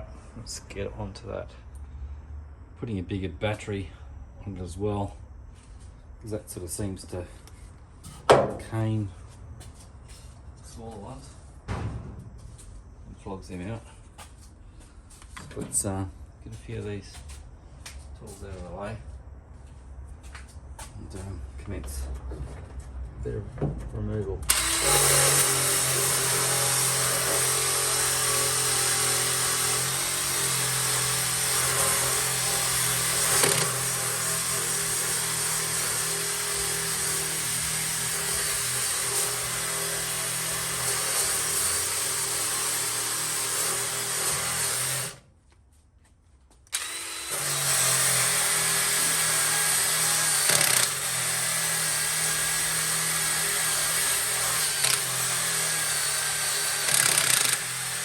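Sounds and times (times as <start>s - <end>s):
drill stripping disc on sheet metal: 24.5s - 45.2s, 46.7s - 58.0s.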